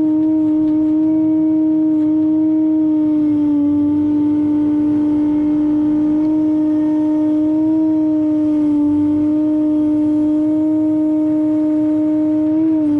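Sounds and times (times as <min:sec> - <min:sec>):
construction machinery whining hum: 0:00.0 - 0:12.9.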